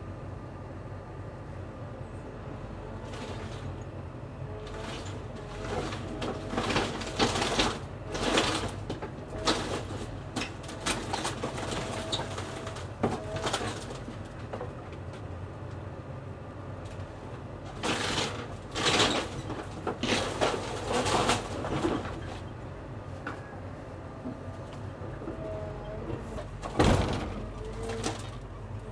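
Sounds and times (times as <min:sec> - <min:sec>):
heavy machine rumbling: 0:00.0 - 0:28.9
structure crashing and cracking: 0:04.6 - 0:14.8, 0:17.6 - 0:22.5, 0:26.4 - 0:28.9
creaking squeals: 0:09.3 - 0:14.0, 0:25.2 - 0:28.5.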